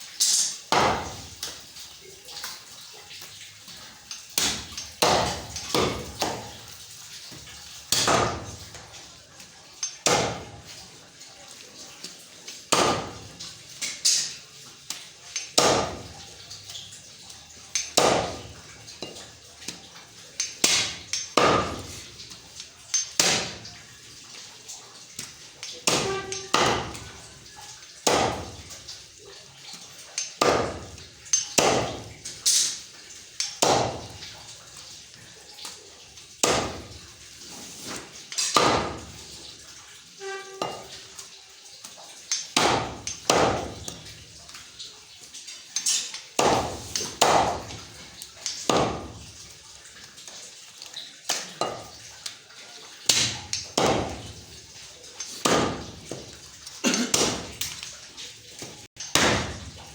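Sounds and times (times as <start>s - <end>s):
cleaver chopping meat and bone: 0.7s - 1.3s, 4.4s - 6.5s, 7.9s - 8.6s, 10.0s - 10.6s, 12.7s - 13.2s, 15.5s - 16.2s, 17.9s - 18.6s, 20.6s - 22.0s, 23.2s - 23.6s, 25.9s - 27.0s, 28.0s - 28.6s, 30.4s - 31.0s, 31.6s - 32.1s, 33.6s - 34.1s, 36.4s - 36.9s, 38.6s - 39.1s, 42.6s - 44.0s, 46.4s - 47.8s, 48.7s - 49.2s, 53.1s - 54.4s, 55.4s - 56.1s, 59.0s - 59.8s.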